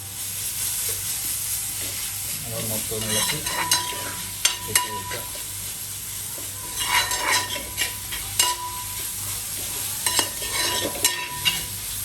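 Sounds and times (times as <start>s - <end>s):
food sizzling in a frying pan: 0.0s - 12.0s
spoon stirring and scraping: 2.9s - 5.4s, 6.4s - 11.8s
spoon clinking against pan: 3.0s - 5.3s, 6.6s - 9.1s, 10.0s - 11.7s.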